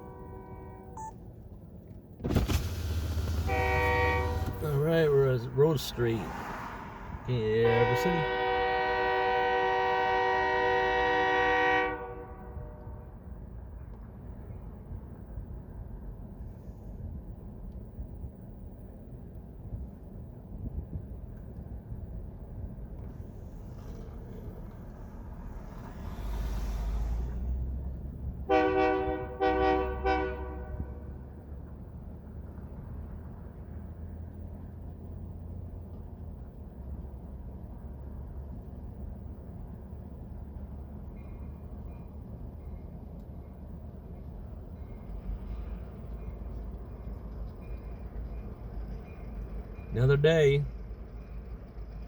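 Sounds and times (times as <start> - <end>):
locomotive air horn chord: 0.0 - 1.0, 3.3 - 4.8, 7.5 - 13.1, 28.5 - 31.1
locomotive engine rumble: 0.0 - 52.0.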